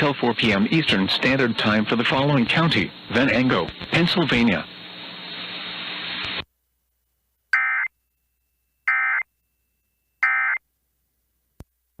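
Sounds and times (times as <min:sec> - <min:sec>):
radio hiss: 0:00.0 - 0:06.5.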